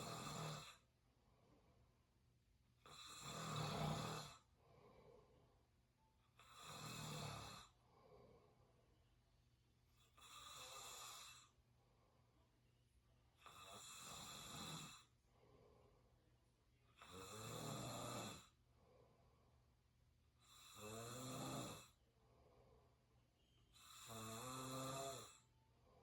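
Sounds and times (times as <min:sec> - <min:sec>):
person snoring: 0:00.0 - 0:00.8, 0:02.8 - 0:04.4, 0:06.4 - 0:07.8, 0:10.2 - 0:11.5, 0:13.4 - 0:15.1, 0:17.0 - 0:18.5, 0:20.4 - 0:22.0, 0:23.8 - 0:25.5
soft breathing: 0:04.1 - 0:05.8, 0:07.2 - 0:09.1, 0:14.9 - 0:16.4, 0:18.5 - 0:19.7, 0:21.9 - 0:23.6.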